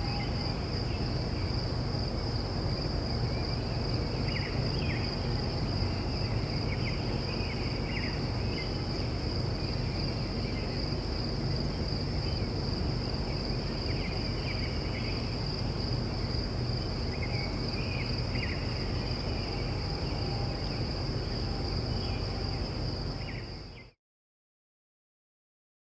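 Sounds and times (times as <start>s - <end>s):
distant crickets trilling: 0.0s - 24.0s.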